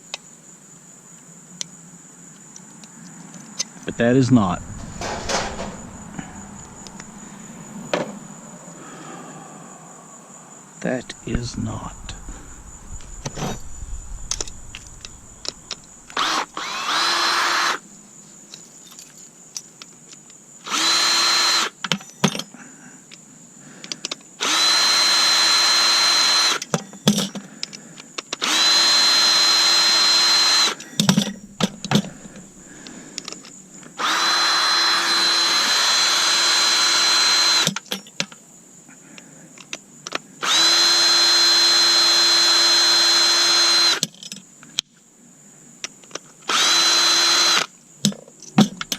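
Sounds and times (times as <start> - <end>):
power drill whining: 11.0 - 17.9, 20.7 - 21.7, 24.4 - 26.6, 28.4 - 33.0, 34.0 - 37.7, 40.4 - 44.0, 46.5 - 47.7
loose parts clicking and rattling: 30.8 - 32.5.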